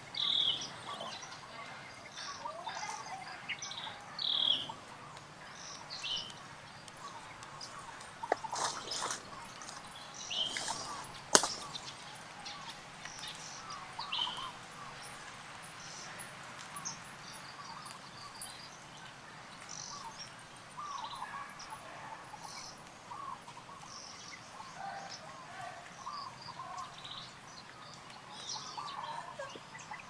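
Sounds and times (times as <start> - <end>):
small animals chirping and squeaking: 7.0 - 12.7.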